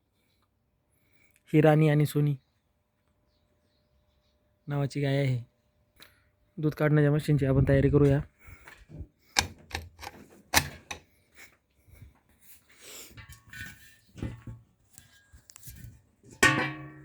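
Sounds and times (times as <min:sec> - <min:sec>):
equipment clicking and rattling: 0:09.4 - 0:11.0.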